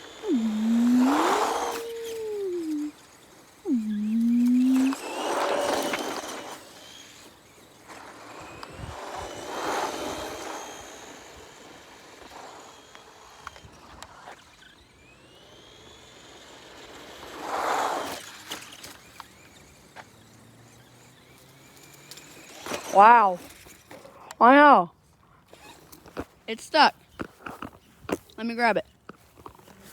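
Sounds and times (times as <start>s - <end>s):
rushes of noise: 0.0s - 11.5s
electric toy car motor whining: 0.0s - 24.2s, 25.5s - 26.3s.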